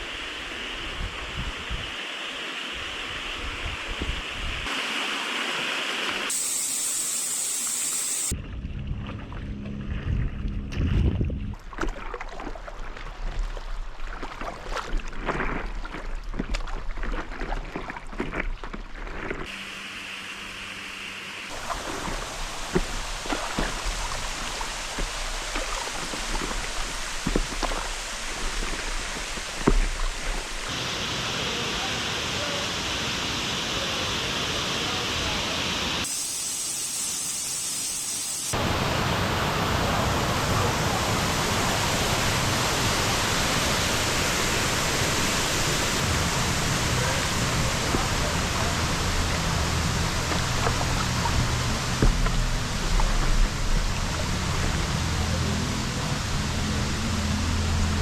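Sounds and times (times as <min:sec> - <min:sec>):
water splashing and lapping: 0:07.9 - 0:20.8, 0:21.4 - 0:30.9, 0:38.5 - 0:58.0
paddle stroke splashes: 0:11.5 - 0:19.6, 0:21.5 - 0:30.8, 0:40.0 - 0:55.4.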